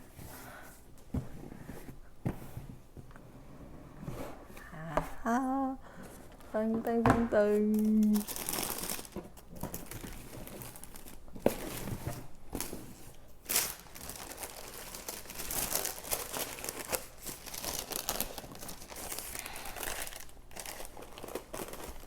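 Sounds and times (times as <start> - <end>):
paper packaging crinkling: 7.5 - 12.8, 13.4 - 22.0.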